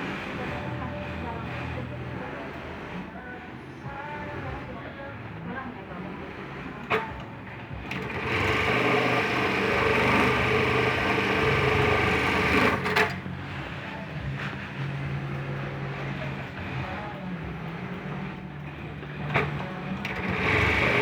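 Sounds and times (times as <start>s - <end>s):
steady machine hum: 0.0s - 21.0s
sewing machine stitching: 6.6s - 13.2s, 17.8s - 21.0s
sewing machine clicks: 19.3s - 21.0s.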